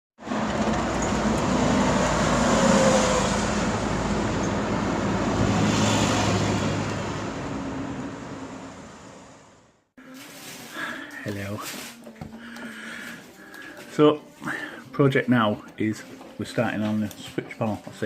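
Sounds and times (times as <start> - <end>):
motor vehicle humming: 0.2 - 9.9.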